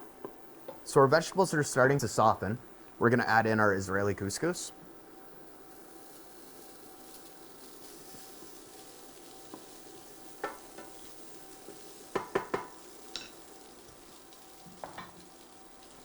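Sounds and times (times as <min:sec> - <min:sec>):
food sizzling in a pan: 0:03.5 - 0:16.0
utensil knocking against pan: 0:10.4 - 0:10.9, 0:12.1 - 0:13.3.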